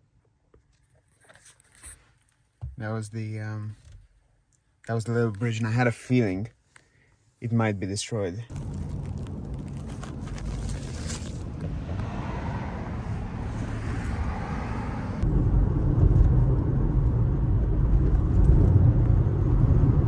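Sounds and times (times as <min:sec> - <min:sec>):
car engine and road noise: 0:08.5 - 0:20.0.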